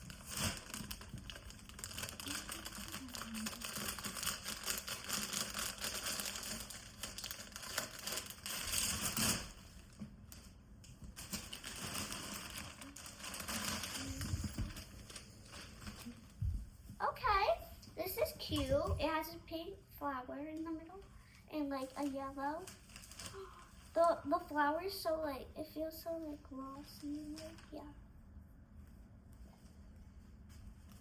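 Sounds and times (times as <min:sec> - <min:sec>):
plastic packaging crinkling: 0:00.0 - 0:16.4, 0:21.7 - 0:24.1.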